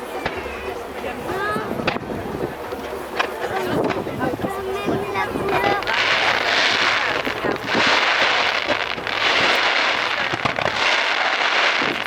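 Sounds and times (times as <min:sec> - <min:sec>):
fireworks crackling: 0:00.0 - 0:12.0
sharp firework pops: 0:01.8 - 0:02.1, 0:02.8 - 0:04.1, 0:05.5 - 0:12.0.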